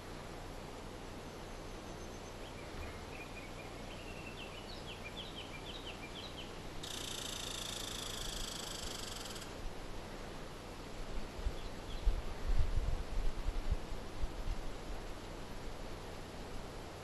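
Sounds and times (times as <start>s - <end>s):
steady low hiss: 0.0s - 17.0s
small bird chirping: 2.0s - 9.5s.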